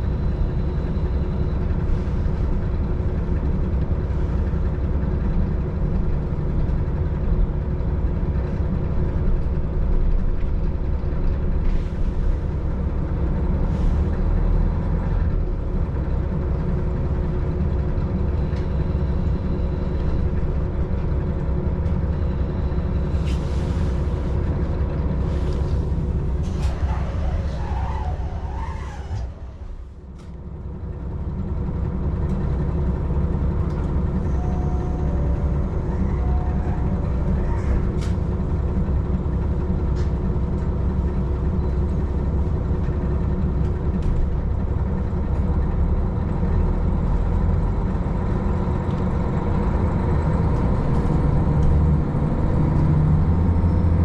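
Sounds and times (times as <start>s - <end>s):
diesel railcar drone: 0.0s - 54.0s
wheel and rail noise: 0.0s - 54.0s
wavering squeal: 26.5s - 30.0s, 34.0s - 38.6s.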